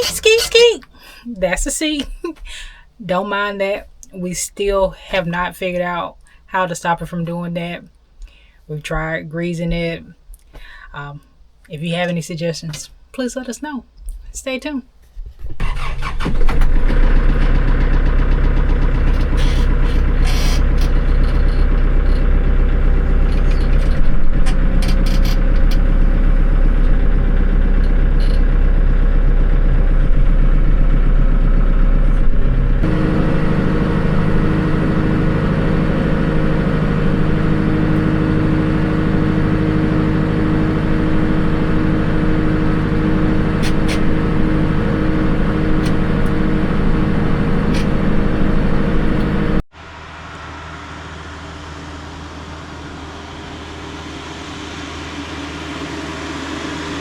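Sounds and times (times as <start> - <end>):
tractor engine running: 0.0 - 2.5, 15.6 - 49.7.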